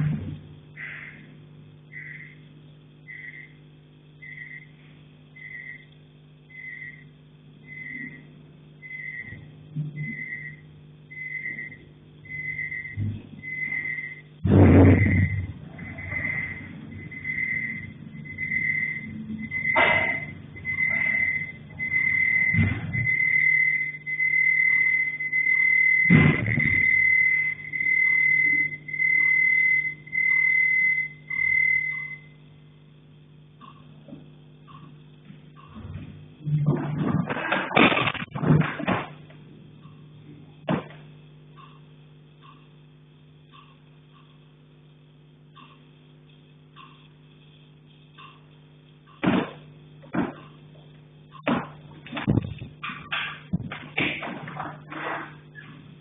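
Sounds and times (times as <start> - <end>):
steady low hum: 0.0 - 56.0
short high electronic beeps: 14.8 - 32.4.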